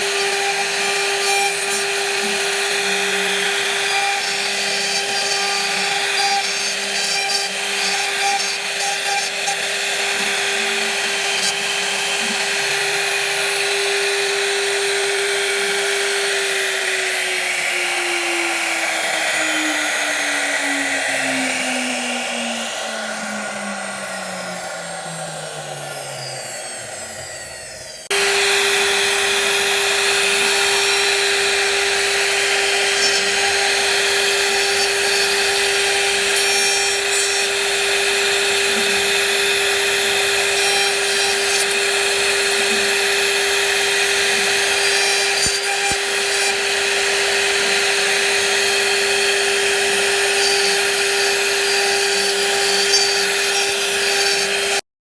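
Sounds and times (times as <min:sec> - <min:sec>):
wood cutting noise: 0:00.0 - 0:54.9
woodworking machine motor whine: 0:00.0 - 0:54.9
motor spinning down: 0:10.2 - 0:34.5.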